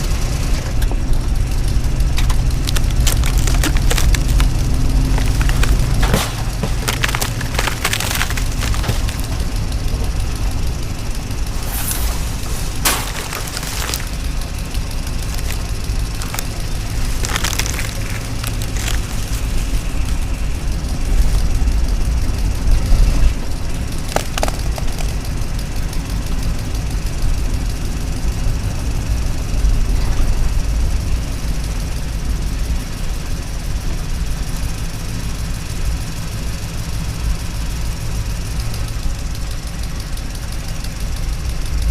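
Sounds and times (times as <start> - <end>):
toy excavator rumbling: 0.0 - 27.0
sharp clicks and knocks: 2.0 - 10.8, 12.8 - 20.2, 24.0 - 25.4.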